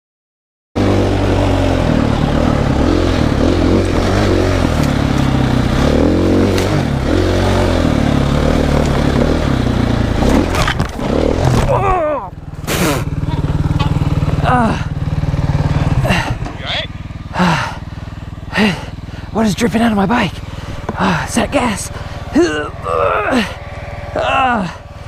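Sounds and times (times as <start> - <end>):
dirt bike engine revving: 0.8 - 25.0
bike clattering and knocking: 20.6 - 21.4.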